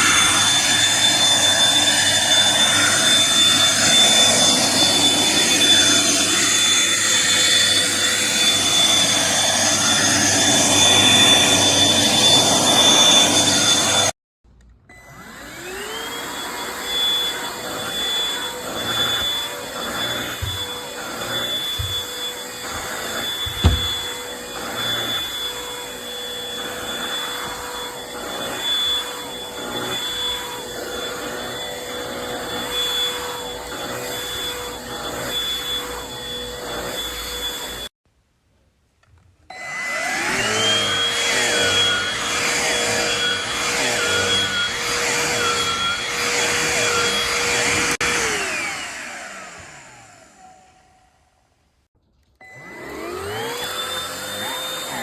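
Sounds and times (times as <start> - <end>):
cordless hand vacuum motor whine: 0.0 - 14.1, 14.9 - 37.9, 39.5 - 51.2, 52.4 - 55.0
thump: 21.8 - 22.1, 23.4 - 24.1.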